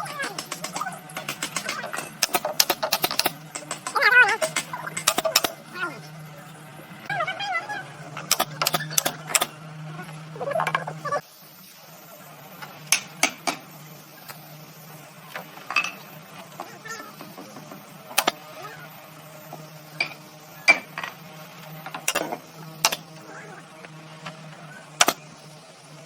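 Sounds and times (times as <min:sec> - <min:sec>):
hand tools knocking on wood: 0:00.0 - 0:05.6, 0:12.9 - 0:13.6, 0:20.0 - 0:21.1
steady low hum: 0:00.0 - 0:26.0.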